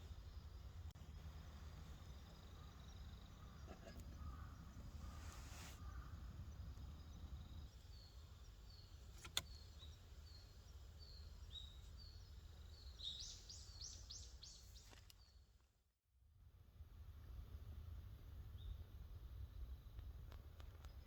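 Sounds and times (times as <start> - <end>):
low steady rumble: 0.0 - 13.7
faint bird calls: 1.8 - 15.3.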